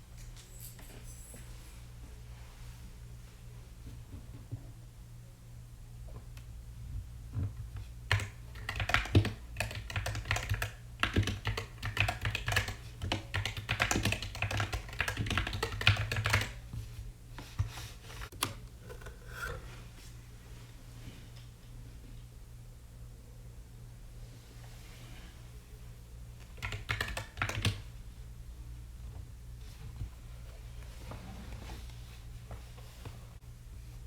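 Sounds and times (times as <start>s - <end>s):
mechanical keyboard typing: 8.1s - 16.6s, 26.4s - 27.9s.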